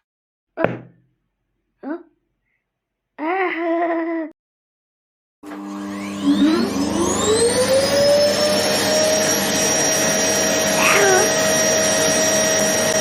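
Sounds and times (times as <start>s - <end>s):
vacuum cleaner motor whine: 5.4s - 13.0s.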